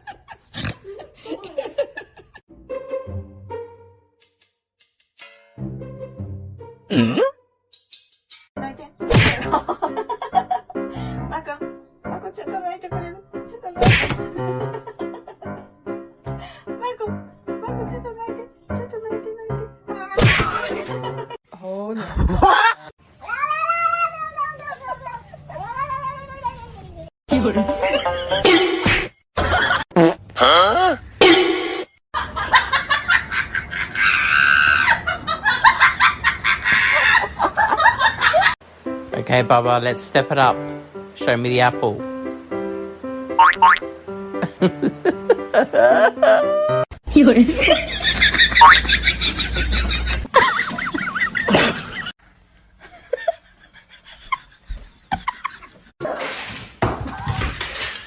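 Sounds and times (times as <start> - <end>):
person laughing hard: 33.6 - 38.5, 44.4 - 46.8, 47.5 - 52.1.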